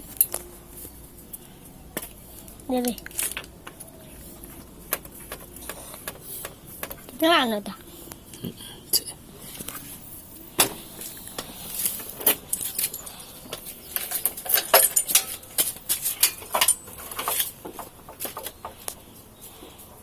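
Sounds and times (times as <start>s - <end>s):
hard objects clicking and clinking: 2.0s - 7.2s, 9.6s - 19.0s.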